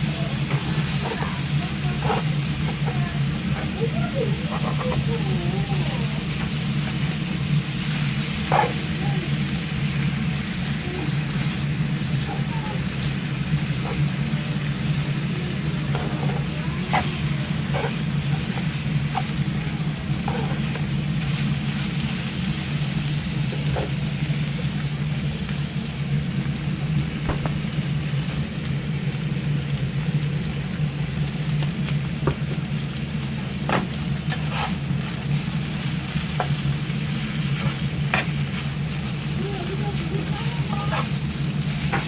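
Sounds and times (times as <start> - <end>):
pork sizzling in a pan: 0.0 - 42.0
utensil clicking against pan: 2.0 - 3.8, 4.4 - 5.4.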